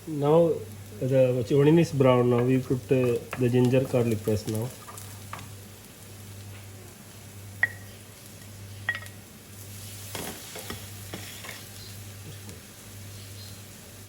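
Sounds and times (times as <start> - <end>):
food sizzling in hot oil: 0.0 - 14.0
steady low hum: 0.0 - 14.0
scraping stirring strokes: 9.7 - 11.8.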